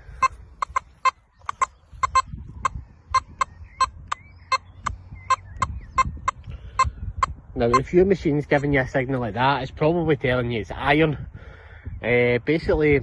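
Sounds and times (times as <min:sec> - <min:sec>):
metal detector short beeps: 0:00.0 - 0:07.9.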